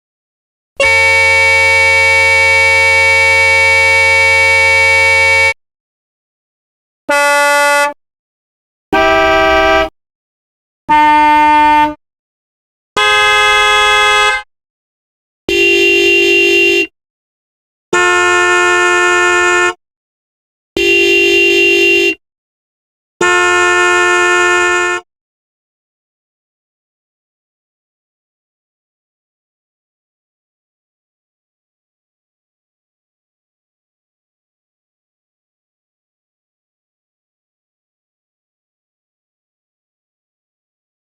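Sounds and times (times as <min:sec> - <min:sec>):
car horn honks: 0:00.8 - 0:05.6, 0:07.1 - 0:08.0, 0:09.0 - 0:09.9, 0:10.9 - 0:12.0, 0:13.0 - 0:14.5, 0:15.5 - 0:16.9, 0:17.9 - 0:19.8, 0:20.8 - 0:22.2, 0:23.2 - 0:25.1.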